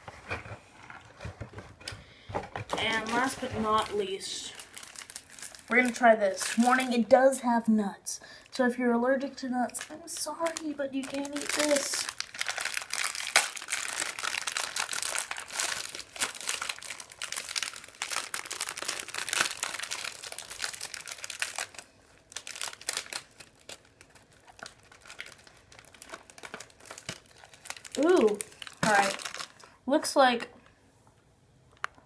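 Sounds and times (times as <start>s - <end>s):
candy wrapper crinkling: 2.8s - 7.1s, 9.2s - 29.8s.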